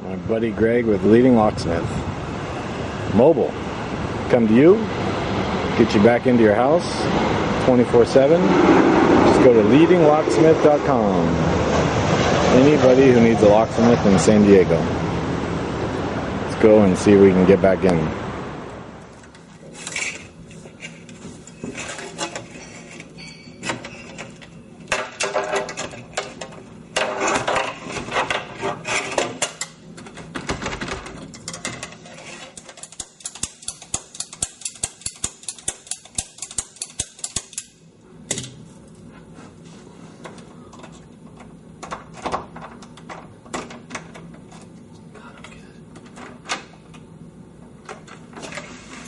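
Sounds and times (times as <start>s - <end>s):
metallic scraping in lock: 31.4s - 37.7s.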